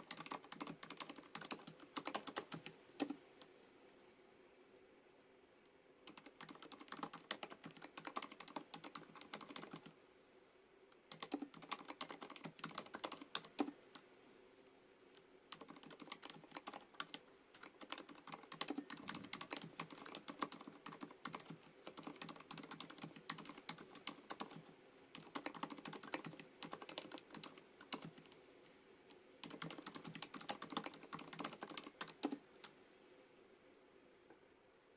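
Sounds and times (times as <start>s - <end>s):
typing on mechanical keyboard: 0.0s - 3.2s, 6.0s - 9.9s, 11.1s - 14.0s, 15.5s - 28.3s, 29.4s - 32.4s.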